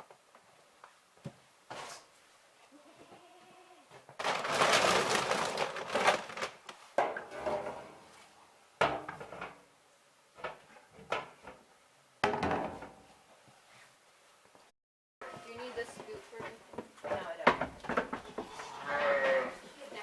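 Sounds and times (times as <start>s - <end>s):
hard objects clattering and knocking: 12.2s - 13.0s, 16.8s - 18.6s.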